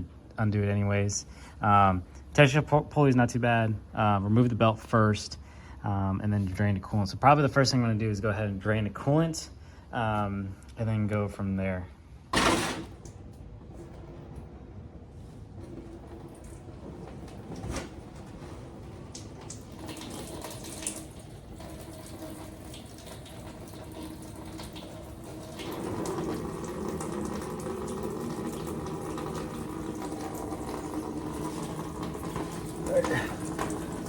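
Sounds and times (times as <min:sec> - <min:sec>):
coolant pouring stream: 0:12.4 - 0:34.0.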